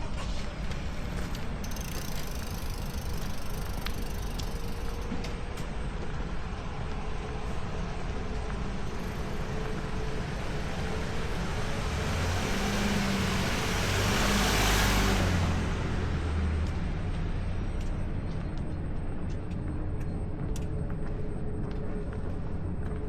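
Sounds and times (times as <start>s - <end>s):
street background noise: 0.0s - 23.0s
vehicle driving past: 9.0s - 18.9s.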